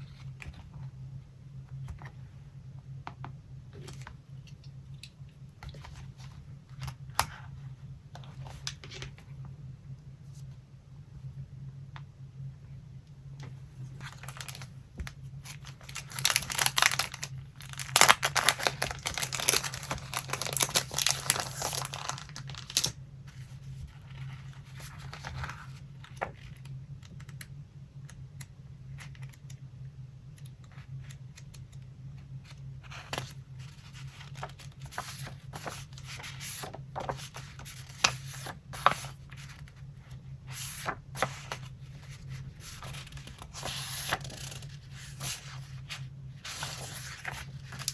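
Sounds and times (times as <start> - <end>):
paper ripping: 15.5 - 22.9
paper rustling and tapping: 15.8 - 22.9.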